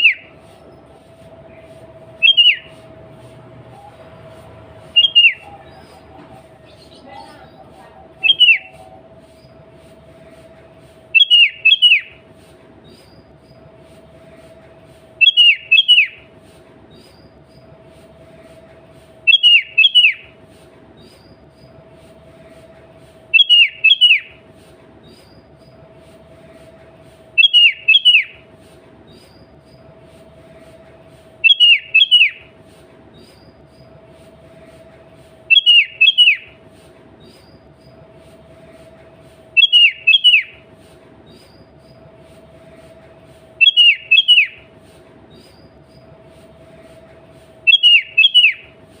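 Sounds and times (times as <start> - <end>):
bird song phrase: 5.0 - 9.6.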